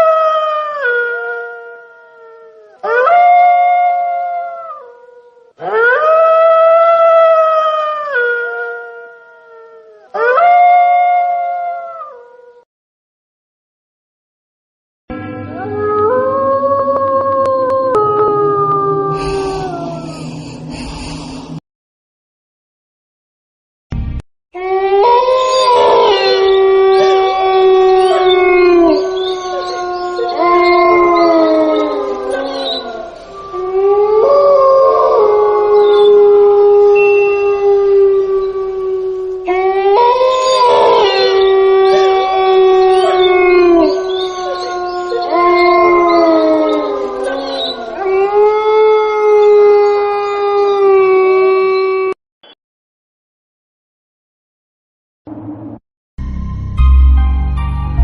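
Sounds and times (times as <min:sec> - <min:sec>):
wolf howling: 0:00.0 - 0:12.6, 0:15.5 - 0:21.6, 0:24.6 - 0:52.2.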